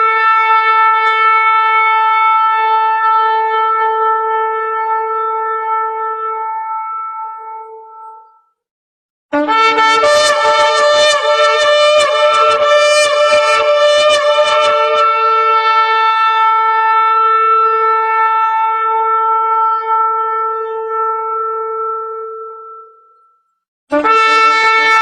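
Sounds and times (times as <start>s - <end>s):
ram's horn blasts: 9.3s - 23.1s, 23.9s - 25.0s.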